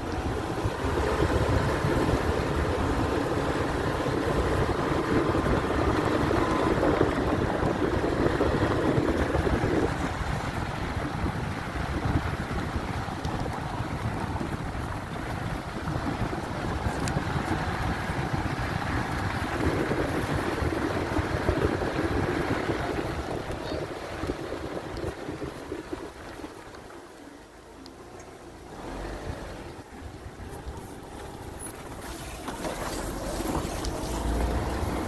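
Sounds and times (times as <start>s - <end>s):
wind buffeting microphone: 0.0s - 27.4s
car engine and tyre rumble: 0.0s - 35.0s.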